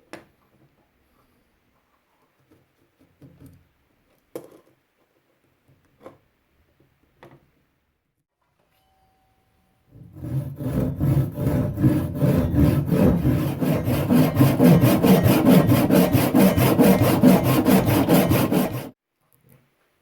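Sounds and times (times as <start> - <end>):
hand saw cutting wood: 10.0 - 19.0.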